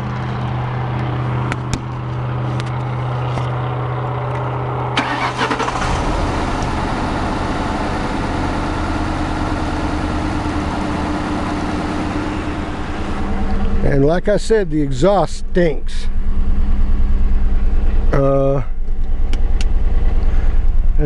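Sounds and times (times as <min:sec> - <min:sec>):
car engine rough idle: 0:00.0 - 0:21.0
starter cranking engine: 0:05.0 - 0:06.7.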